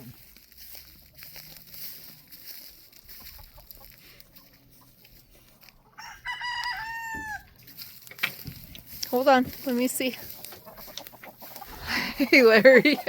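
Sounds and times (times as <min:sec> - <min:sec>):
rooster crowing: 0:06.0 - 0:07.5.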